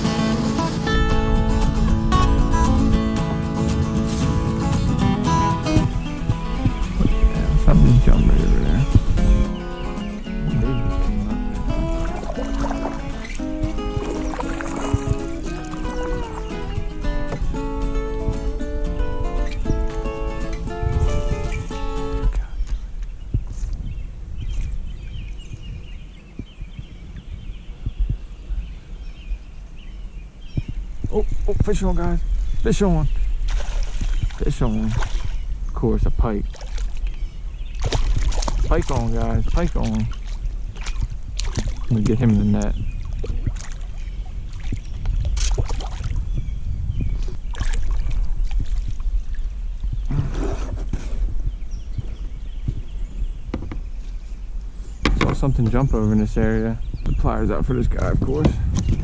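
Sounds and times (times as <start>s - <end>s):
low rumble: 0.0s - 12.6s
soft low knocks: 0.0s - 22.3s
water splashing: 0.0s - 22.4s, 33.4s - 35.4s, 36.4s - 46.4s, 47.2s - 49.4s
birds chirping: 0.0s - 22.6s, 49.4s - 59.0s
wind rumble on microphone: 0.0s - 59.0s
knocks against a kayak: 53.5s - 53.9s, 55.0s - 55.5s.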